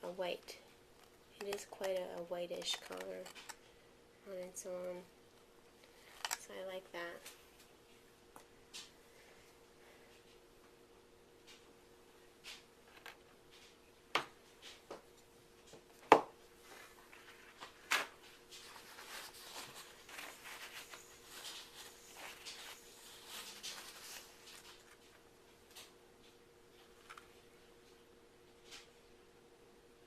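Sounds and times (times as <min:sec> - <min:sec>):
soft rustling handling noise: 0:11.4 - 0:28.0.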